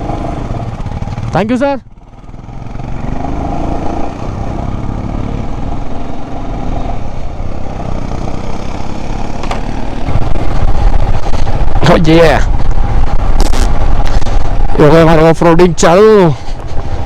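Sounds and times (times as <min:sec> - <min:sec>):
motorcycle engine pulling away: 0:00.0 - 0:11.6.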